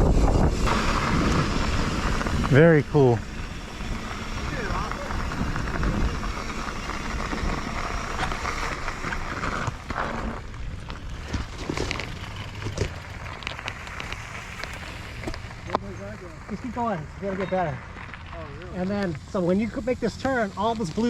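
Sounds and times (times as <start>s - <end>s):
wind rumbling on microphone: 0.0s - 15.7s
mountain bike rolling on dirt: 0.0s - 21.0s
tyres crunching on loose ground: 0.2s - 21.0s.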